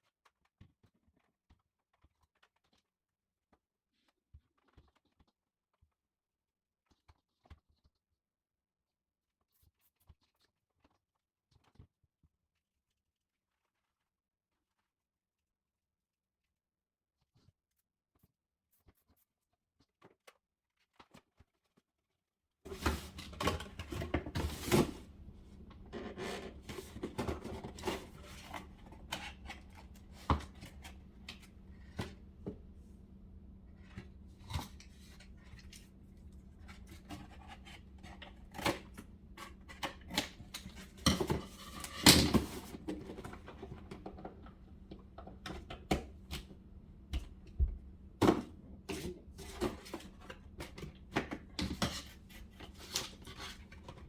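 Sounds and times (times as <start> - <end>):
handling cables and plugs: 22.7 - 54.0
steady low hum: 22.7 - 54.0.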